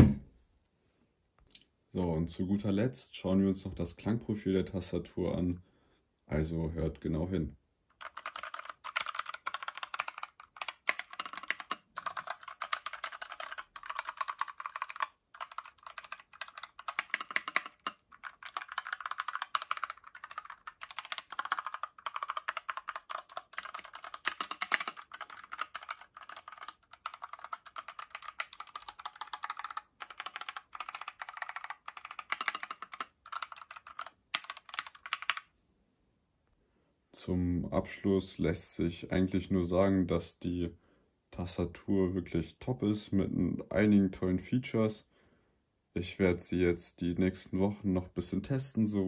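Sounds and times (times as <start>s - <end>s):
mechanical keyboard typing: 7.9s - 35.5s.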